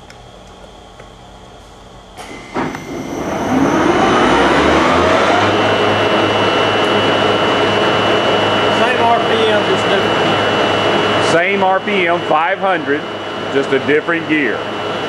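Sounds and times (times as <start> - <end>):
spindle drive whining: 2.0 - 13.7.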